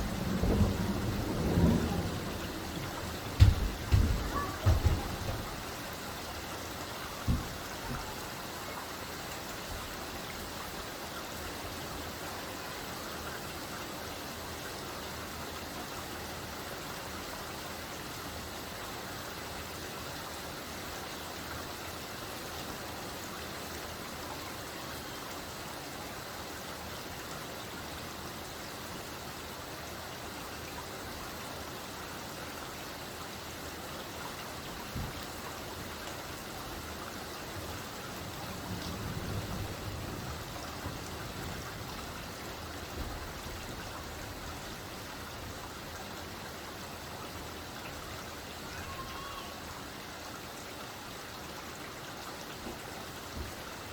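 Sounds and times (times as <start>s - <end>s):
light rain falling: 0.0s - 53.9s
short low thump: 3.3s - 5.6s.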